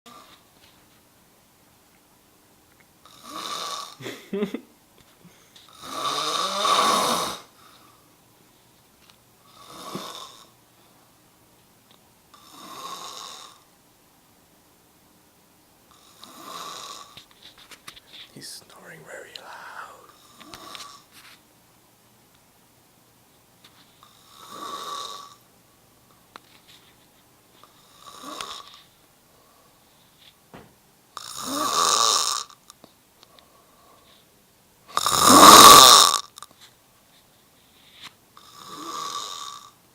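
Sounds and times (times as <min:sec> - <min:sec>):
man snoring: 0:03.1 - 0:04.0, 0:05.8 - 0:07.5, 0:09.5 - 0:10.5, 0:12.4 - 0:13.6, 0:16.0 - 0:17.2, 0:18.4 - 0:21.0, 0:24.2 - 0:25.4, 0:27.8 - 0:28.6, 0:31.2 - 0:32.5, 0:34.9 - 0:36.3, 0:38.4 - 0:39.8.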